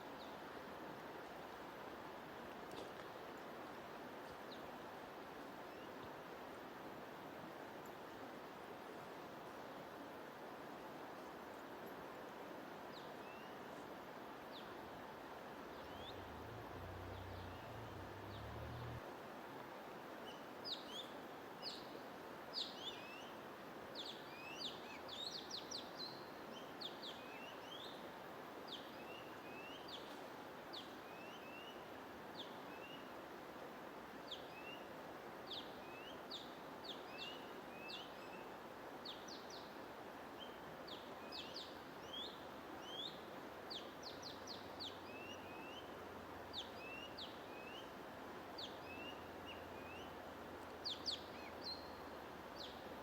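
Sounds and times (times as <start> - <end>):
white noise hiss: 0.0 - 53.0
small birds chirping: 50.8 - 52.9.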